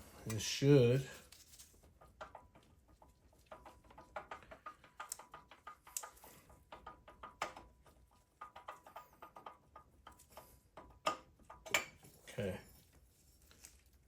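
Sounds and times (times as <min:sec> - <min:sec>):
wrench metal clicks and taps: 0:03.4 - 0:12.0.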